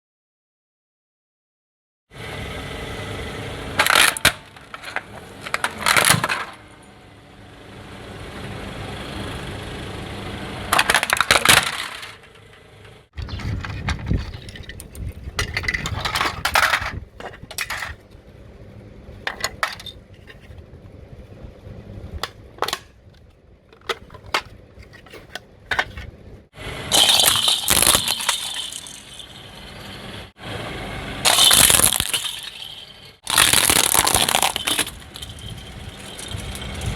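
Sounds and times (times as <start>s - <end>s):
low rumble of car: 2.1s - 36.9s
tyres crushing brittle objects: 26.9s - 29.8s, 31.2s - 36.9s.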